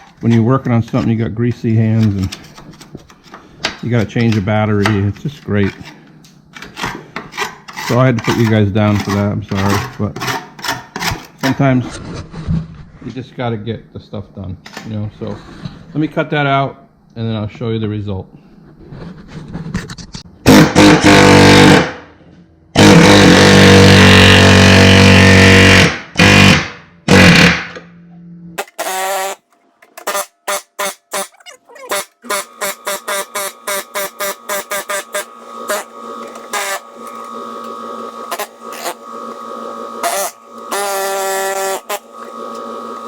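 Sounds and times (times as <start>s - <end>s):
power tool cutting sheet metal: 20.5s - 22.0s, 22.8s - 27.6s, 28.6s - 43.0s.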